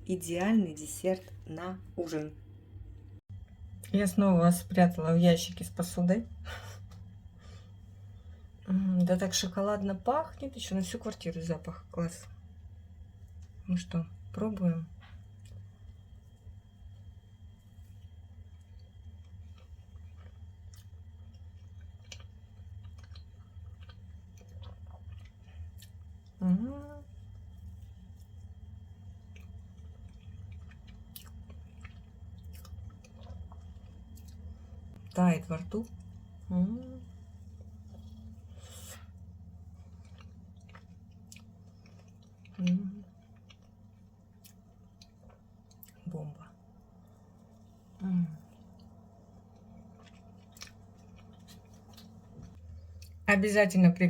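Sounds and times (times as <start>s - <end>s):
low hum: 0.0s - 54.0s
person chewing: 17.7s - 26.4s, 27.1s - 35.2s, 37.1s - 46.0s, 46.8s - 53.2s.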